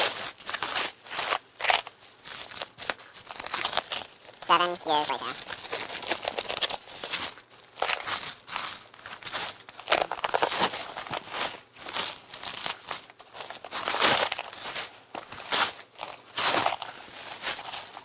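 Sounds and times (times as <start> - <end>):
packaging tearing and crinkling: 0.0 - 4.4, 5.4 - 8.3, 9.0 - 11.4.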